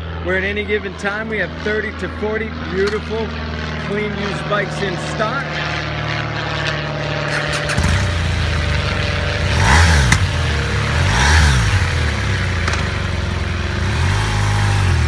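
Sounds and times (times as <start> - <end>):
motorcycle engine idling: 7.2 - 15.0.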